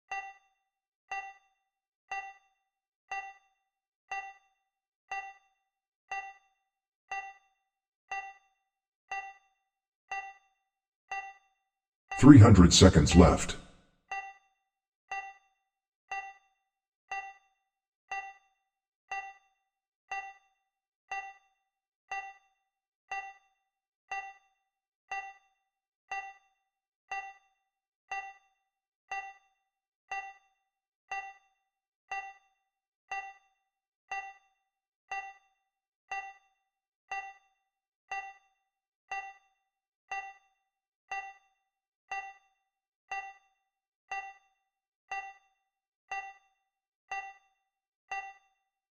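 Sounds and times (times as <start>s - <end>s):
timer ding ticks: 0.1s - 0.4s, 1.1s - 1.4s, 2.1s - 2.4s, 3.1s - 3.4s, 4.1s - 4.4s, 5.1s - 5.4s, 6.1s - 6.4s, 7.1s - 7.4s, 8.1s - 8.4s, 9.1s - 9.4s, 10.1s - 10.4s, 12.2s - 13.6s, 38.1s - 38.4s, 39.1s - 39.4s, 40.1s - 40.4s, 41.1s - 41.4s, 42.1s - 42.4s, 43.1s - 43.4s, 44.1s - 44.4s, 45.1s - 45.4s, 46.1s - 46.4s, 47.1s - 47.4s, 48.1s - 48.5s.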